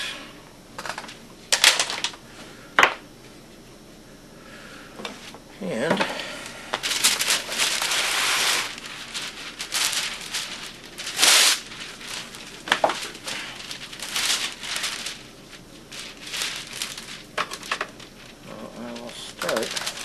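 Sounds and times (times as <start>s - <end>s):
sheet material rustling: 6.8s - 20.0s.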